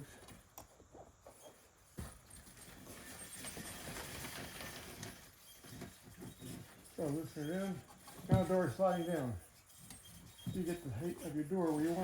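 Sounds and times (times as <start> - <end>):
metal scraping: 2.2 - 12.0.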